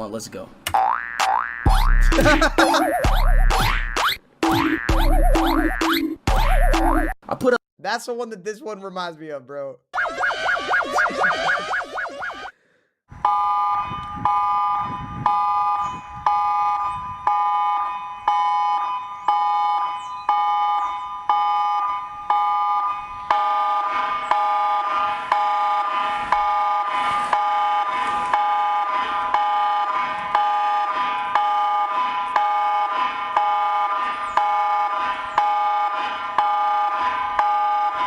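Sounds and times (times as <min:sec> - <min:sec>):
fast warbling electronic tone: 0:00.7 - 0:07.2, 0:09.9 - 0:12.5.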